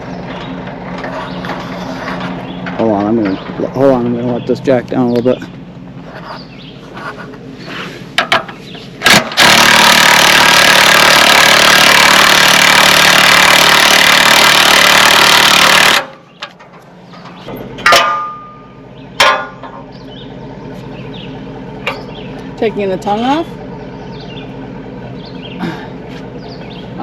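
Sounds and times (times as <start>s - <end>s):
power tool running: 9.0s - 16.2s
metallic knocks: 13.7s - 19.9s.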